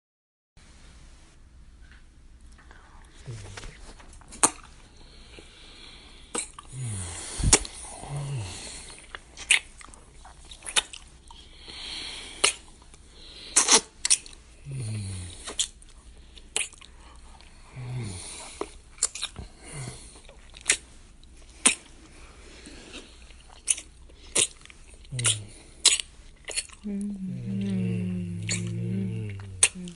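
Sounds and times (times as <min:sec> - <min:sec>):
breathing: 0:05.0 - 0:09.0, 0:11.4 - 0:12.5
wet lip smacks of kissing: 0:06.3 - 0:06.7, 0:09.4 - 0:09.7, 0:10.6 - 0:11.0, 0:12.4 - 0:12.7, 0:13.6 - 0:14.3, 0:16.5 - 0:16.9, 0:20.6 - 0:20.8, 0:21.6 - 0:21.9, 0:24.4 - 0:24.6, 0:25.2 - 0:26.8
low falling hums: 0:26.8 - 0:29.9.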